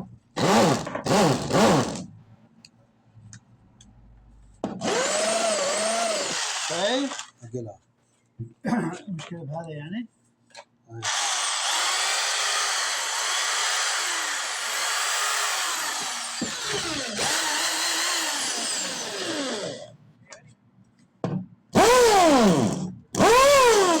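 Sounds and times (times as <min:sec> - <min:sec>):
electric drill motor running: 0:00.4 - 0:02.0, 0:04.8 - 0:07.3, 0:11.0 - 0:19.9, 0:21.8 - 0:24.0.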